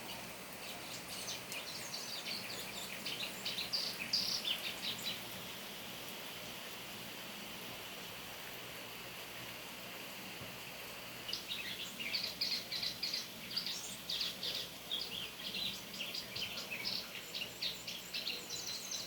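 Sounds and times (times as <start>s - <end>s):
bird twittering song: 0.0s - 5.4s, 11.3s - 19.0s
rain hissing: 0.0s - 19.0s.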